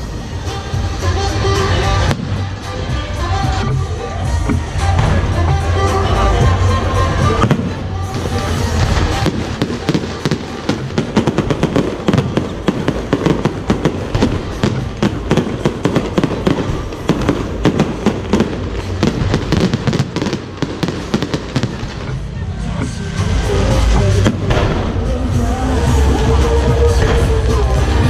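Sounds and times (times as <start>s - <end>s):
fireworks popping and banging: 0.0s - 3.8s, 4.4s - 28.0s.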